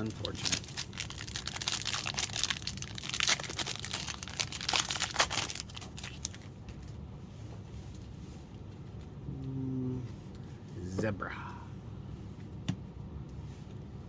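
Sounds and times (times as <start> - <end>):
plastic wrapper crinkling: 0.0 - 7.0.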